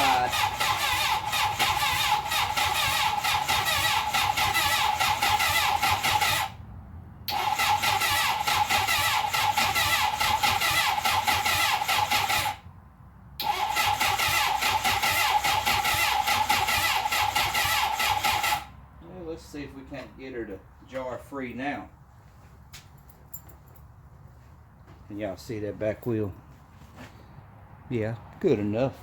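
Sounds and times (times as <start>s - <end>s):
starter motor cranking: 0.0s - 6.6s, 7.3s - 12.6s, 13.4s - 18.7s.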